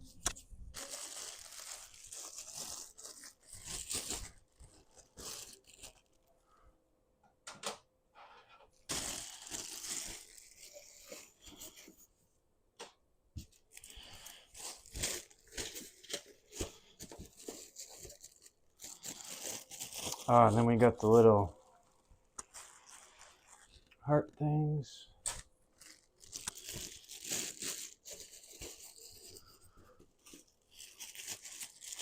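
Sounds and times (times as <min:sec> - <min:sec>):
packaging tearing and crinkling: 0:00.7 - 0:06.3, 0:08.9 - 0:11.6, 0:13.7 - 0:21.0, 0:21.8 - 0:24.0, 0:25.2 - 0:29.5, 0:30.2 - 0:32.0.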